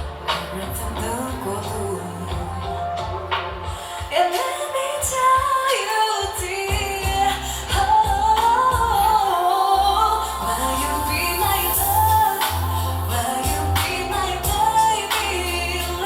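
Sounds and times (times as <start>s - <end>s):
live band playing pop: 0.0s - 16.0s
woman singing: 0.0s - 16.0s.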